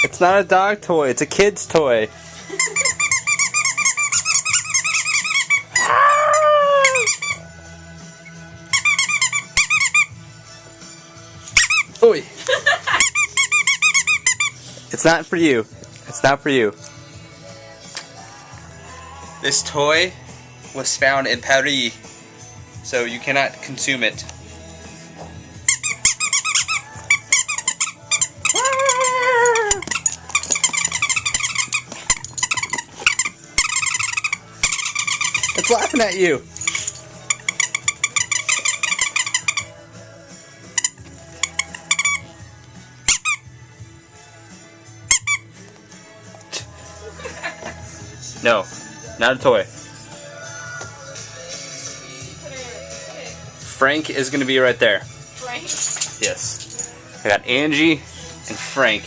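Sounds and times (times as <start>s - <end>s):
electronic toy laughing: 2.5s - 5.6s, 12.5s - 14.3s
toy squeaking chirps: 2.6s - 5.8s, 6.9s - 7.4s, 8.7s - 10.1s, 11.6s - 11.9s, 13.0s - 14.5s, 25.7s - 39.7s, 40.8s - 42.3s
falling toy squeal: 6.8s - 7.4s, 25.7s - 31.9s, 32.5s - 35.9s.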